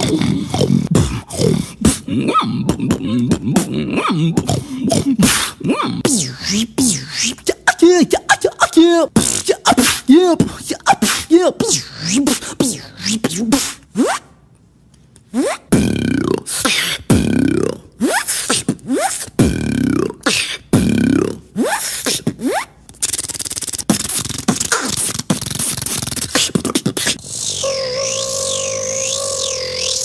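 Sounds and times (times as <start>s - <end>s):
mouth clicks: 0.0s - 7.5s, 15.2s - 30.0s
beatboxing pitch sweeps: 0.0s - 14.3s, 15.3s - 30.0s
swooping mouth tones: 0.0s - 14.3s, 15.3s - 30.0s.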